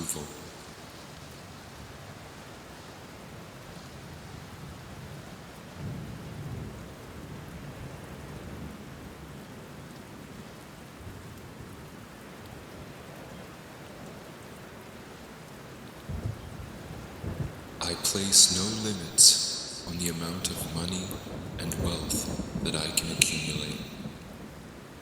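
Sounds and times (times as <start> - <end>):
steady rain: 0.0 - 25.0
low rumble of thunder: 16.1 - 25.0.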